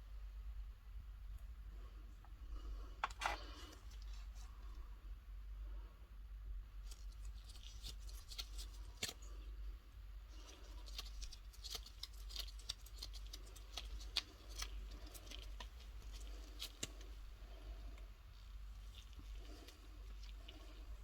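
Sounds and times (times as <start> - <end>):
low electrical hum: 0.0 - 21.0
small clicks and scratches: 3.0 - 4.8, 6.8 - 9.4, 10.4 - 21.0.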